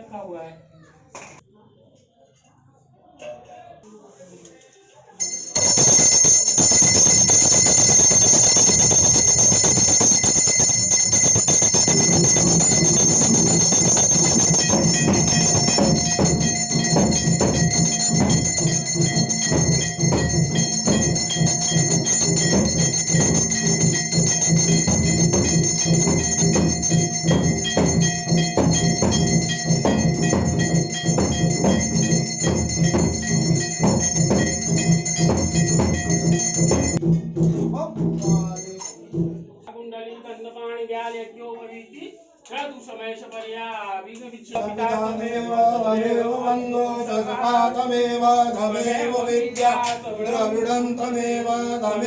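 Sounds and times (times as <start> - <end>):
low steady bell tone: 5.2 - 37.2, 38.2 - 39.1
temple bells rung rapidly: 5.2 - 37.4, 38.0 - 39.0.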